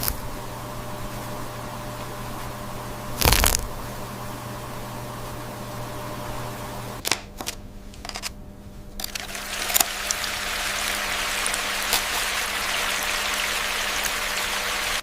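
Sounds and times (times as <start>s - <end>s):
running water trickling: 9.0s - 15.0s.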